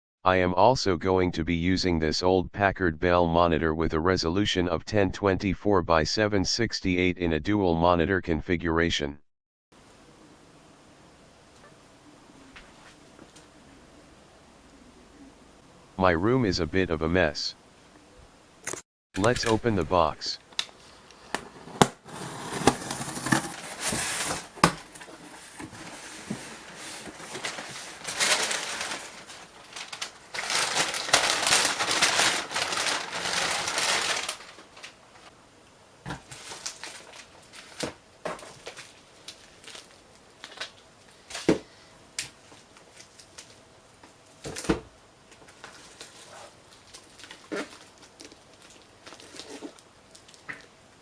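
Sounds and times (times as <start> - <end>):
packaging rustling and crinkling: 20.7 - 35.3, 36.2 - 41.5, 42.4 - 43.6, 45.3 - 50.6.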